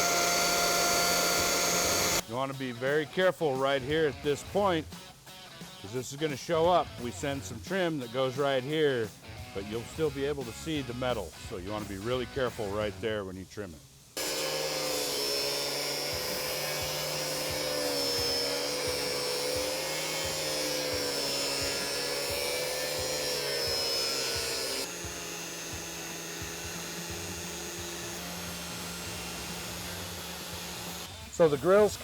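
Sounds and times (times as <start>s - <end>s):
angle grinder cutting plastic: 0.0s - 2.2s, 14.2s - 31.9s.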